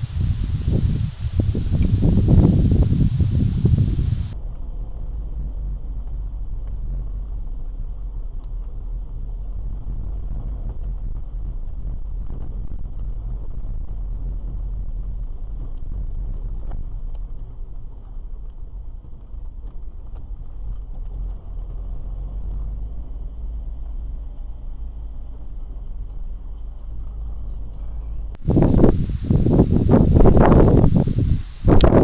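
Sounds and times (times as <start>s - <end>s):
faint ticks: 0.0s - 4.4s, 28.5s - 32.0s.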